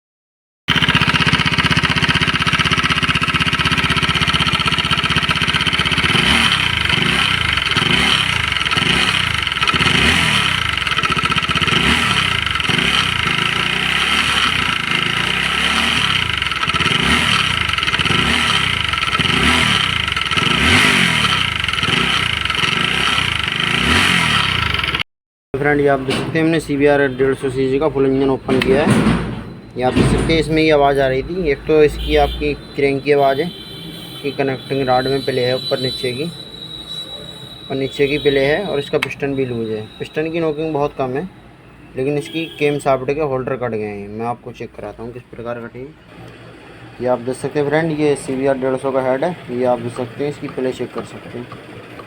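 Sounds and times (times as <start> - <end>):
high mechanical engine noise: 0.7 - 25.0, 46.1 - 52.0
motorcycle engine idling and revving: 0.7 - 25.0, 28.2 - 41.7, 46.0 - 52.0.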